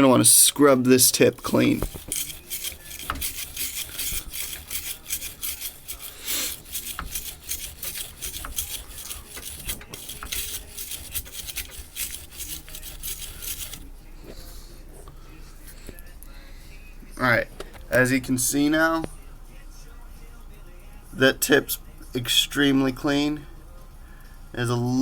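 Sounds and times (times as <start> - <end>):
wire brush scrubbing metal nozzle: 0.0 - 14.0.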